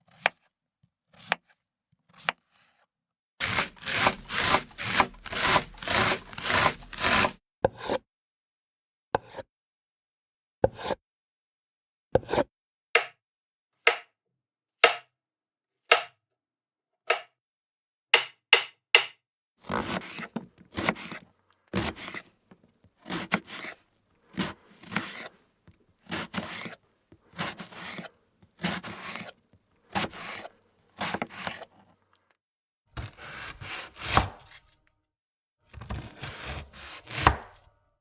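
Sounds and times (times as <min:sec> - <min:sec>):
knife chopping on a board: 0:00.1 - 0:00.4, 0:01.2 - 0:01.4, 0:03.4 - 0:08.0, 0:09.2 - 0:09.4, 0:10.6 - 0:11.0, 0:12.2 - 0:12.4, 0:18.2 - 0:21.2, 0:21.8 - 0:22.3, 0:23.0 - 0:25.4, 0:26.0 - 0:31.7, 0:33.0 - 0:34.8, 0:35.7 - 0:37.7.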